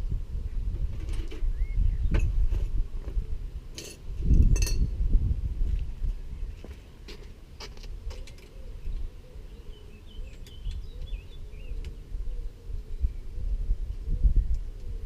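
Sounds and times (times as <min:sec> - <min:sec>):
steady low rumble: 0:00.0 - 0:06.6
faint bird twittering: 0:01.5 - 0:02.2, 0:08.2 - 0:15.0.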